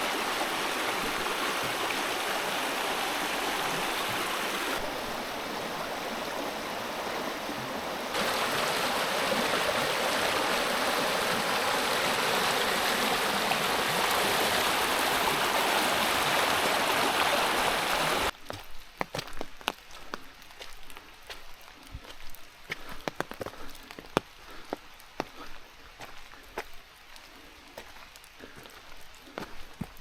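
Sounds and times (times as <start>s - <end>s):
stream water rushing: 0.0s - 18.3s.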